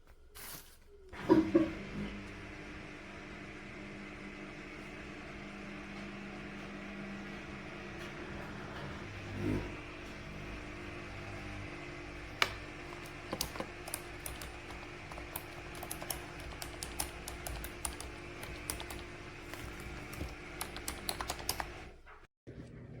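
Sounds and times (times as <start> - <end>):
steady background hum: 6.6 - 22.2
keyboard key clicks: 12.4 - 21.8.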